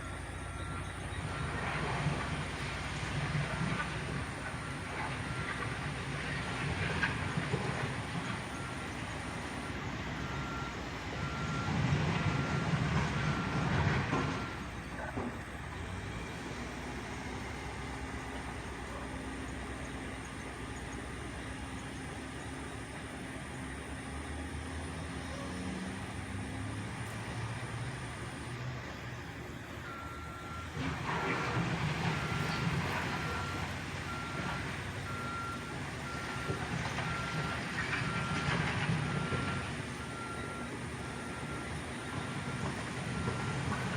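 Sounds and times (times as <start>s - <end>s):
reversing alarm beeps: 0.0s - 1.6s, 6.8s - 15.2s, 29.8s - 43.9s
diesel engine running: 0.0s - 43.9s.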